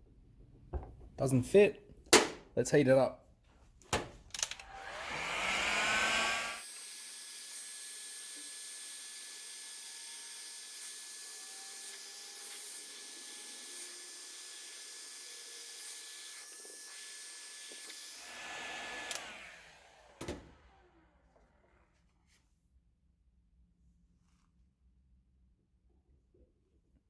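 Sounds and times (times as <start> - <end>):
sharp knock: 2.1 - 2.4
heat gun blowing with whine: 4.6 - 6.7, 17.6 - 21.0.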